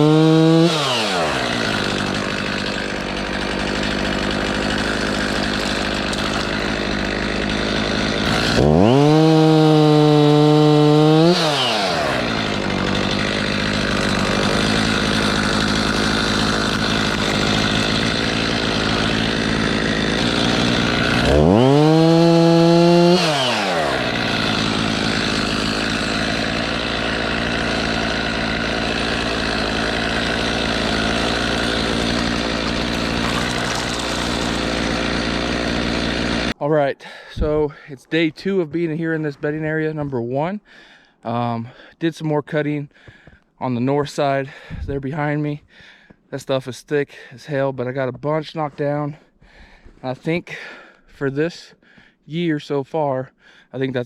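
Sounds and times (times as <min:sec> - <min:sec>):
chainsaw idling and revving: 0:00.0 - 0:36.6.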